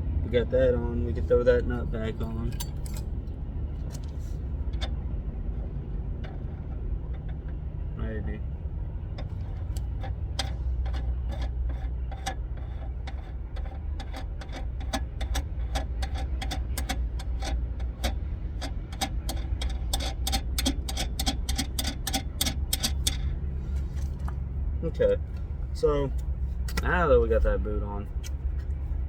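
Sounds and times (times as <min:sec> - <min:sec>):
steady low hum: 0:00.0 - 0:29.0
ratchet wrench clicking: 0:09.1 - 0:23.4.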